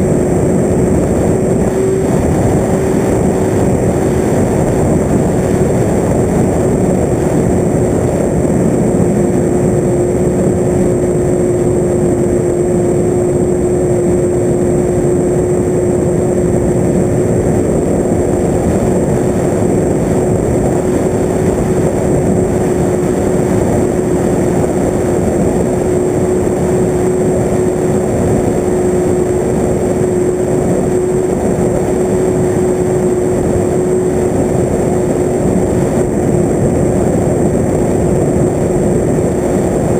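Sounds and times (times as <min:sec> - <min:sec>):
loud rushing wind noise: 0:00.0 - 0:39.9
propeller motor humming: 0:00.0 - 0:39.9.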